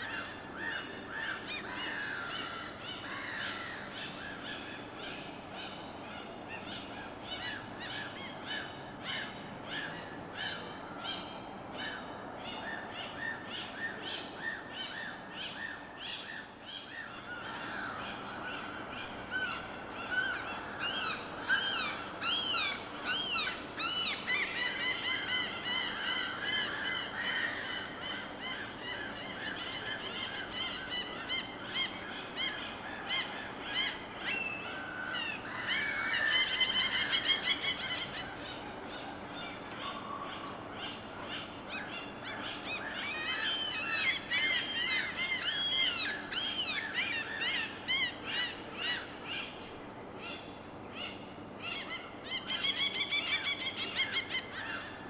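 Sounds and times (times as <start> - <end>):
birds calling: 12.7 - 55.0.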